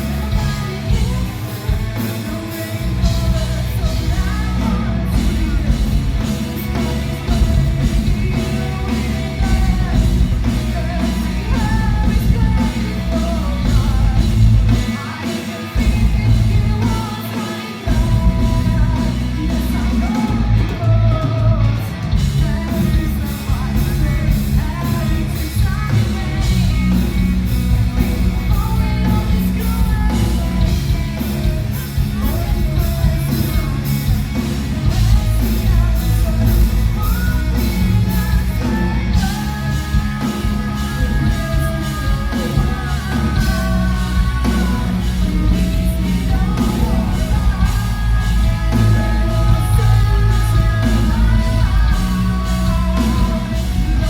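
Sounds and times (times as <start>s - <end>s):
bass guitar: 0.0s - 54.0s
distorted electric guitars: 0.0s - 54.0s
drums: 0.0s - 54.0s
person singing: 0.0s - 54.0s.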